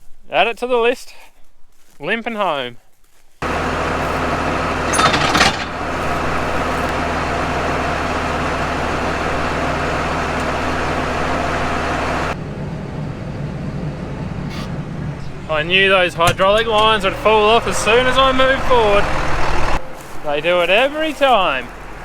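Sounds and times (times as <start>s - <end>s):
loud clatter: 3.4s - 7.3s
tractor engine running: 3.4s - 22.0s.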